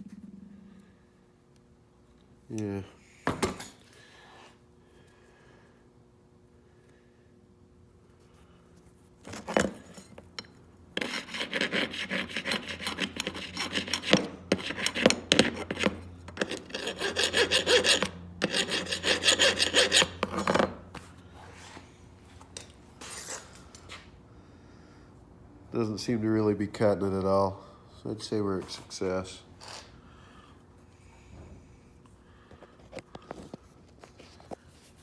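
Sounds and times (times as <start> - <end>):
metal file rasping on steel: 11.0 - 20.7.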